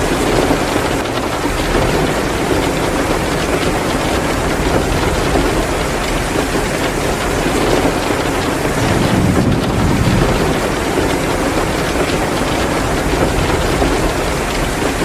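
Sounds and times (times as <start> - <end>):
heavy rain pouring: 0.0 - 15.0
wood fire crackling: 4.5 - 15.0
low rumble: 8.8 - 11.6.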